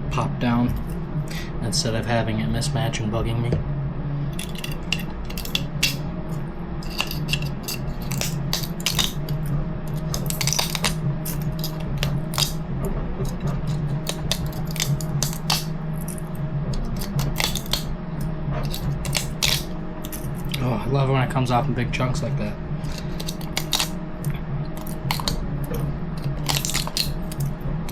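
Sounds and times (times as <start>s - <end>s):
steady low hum: 0.0s - 27.9s
plastic parts clicking and scraping: 4.4s - 6.0s, 6.8s - 12.6s, 13.3s - 17.9s, 18.6s - 20.6s, 22.8s - 24.0s, 24.8s - 27.5s.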